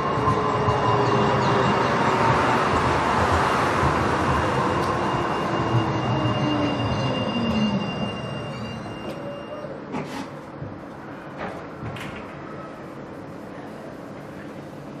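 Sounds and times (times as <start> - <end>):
steady high tone: 0.0 - 9.8
tram motor and brakes whining: 0.0 - 13.4
tram rolling noise: 0.0 - 15.0.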